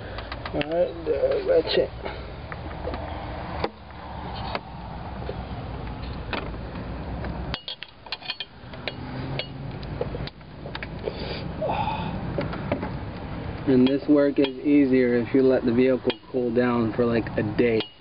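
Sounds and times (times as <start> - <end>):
background noise: 0.0 - 18.0
hand tools clinking on metal: 7.5 - 9.6, 13.8 - 14.8, 17.7 - 18.0.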